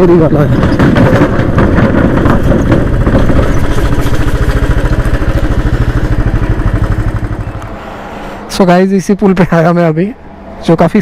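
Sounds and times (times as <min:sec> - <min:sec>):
motorcycle engine thumping: 0:00.5 - 0:07.7.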